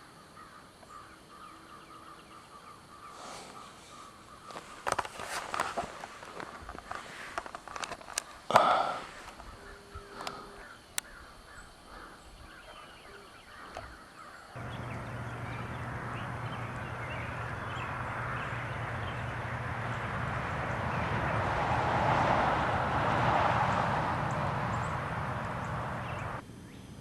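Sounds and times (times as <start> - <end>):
harsh bird call: 14.6 - 21.6
low hum with hiss: 14.6 - 27.0.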